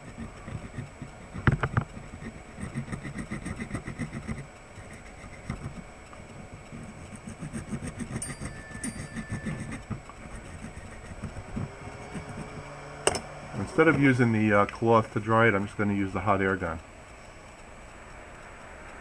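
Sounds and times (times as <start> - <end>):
circuit board being scrubbed: 0.0 - 14.5.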